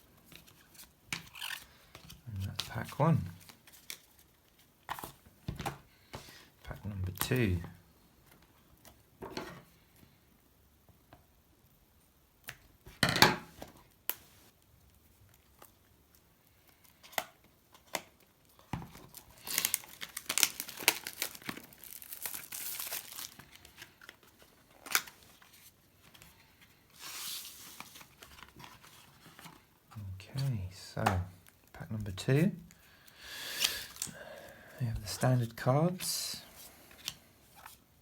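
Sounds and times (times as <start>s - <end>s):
wrapper crinkling: 0.4s - 1.8s, 18.5s - 25.8s, 33.6s - 34.2s
wrapper tearing: 0.4s - 1.8s, 18.9s - 25.7s, 33.5s - 34.1s.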